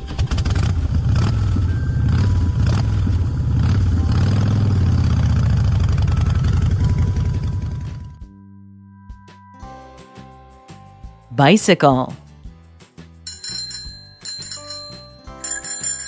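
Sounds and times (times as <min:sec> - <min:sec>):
motorcycle engine running: 0:00.0 - 0:08.3.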